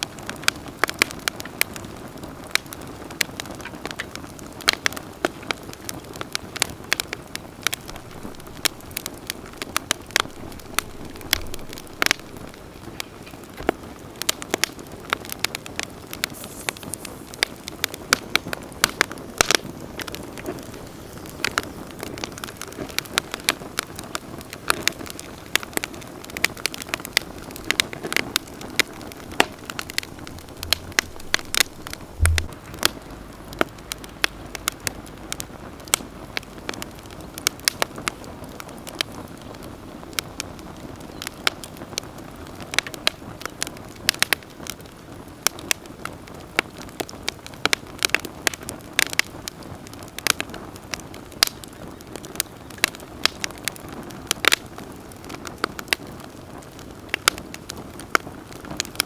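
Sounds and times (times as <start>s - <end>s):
campfire crackling: 0.0s - 59.0s
flames rushing: 0.1s - 41.0s
low thud: 7.9s - 12.6s, 29.4s - 34.8s.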